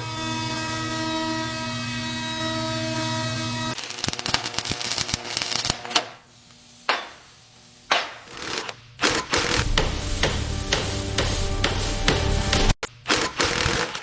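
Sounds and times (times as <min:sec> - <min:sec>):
sharp bursts: 0:03.7 - 0:14.0.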